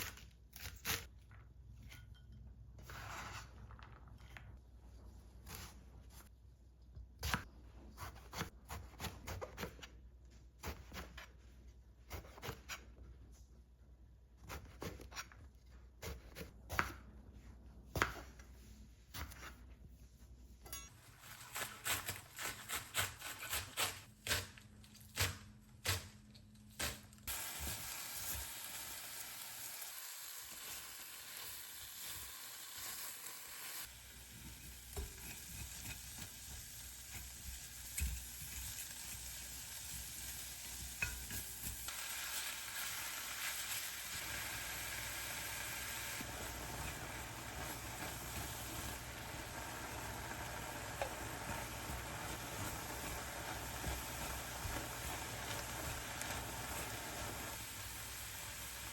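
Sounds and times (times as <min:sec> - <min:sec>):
food sizzling in a hot pan: 0:27.3 - 0:58.9.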